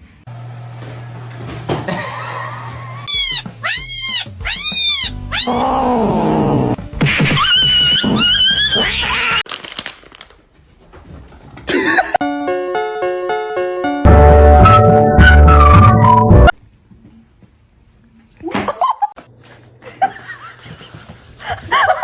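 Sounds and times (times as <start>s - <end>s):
cat meowing: 3.1s - 6.0s
music: 3.1s - 9.3s, 12.2s - 16.6s.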